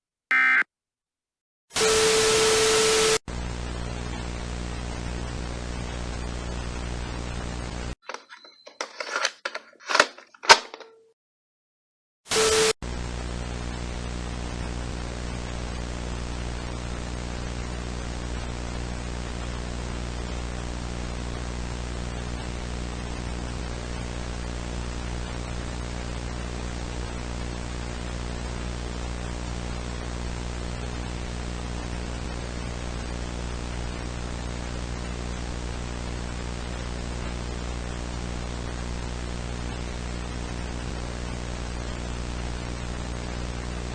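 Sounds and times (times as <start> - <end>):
loud tone burst: 0.3 - 0.6.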